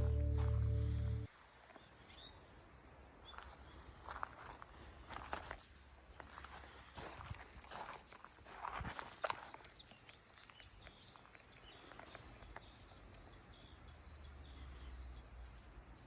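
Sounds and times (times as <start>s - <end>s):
footsteps and scuffs: 3.4s - 10.1s.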